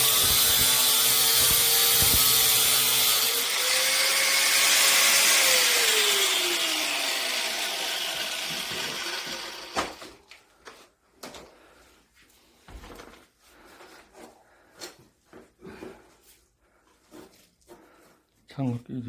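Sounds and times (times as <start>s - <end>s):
power tool motor whirring: 0.0s - 10.0s.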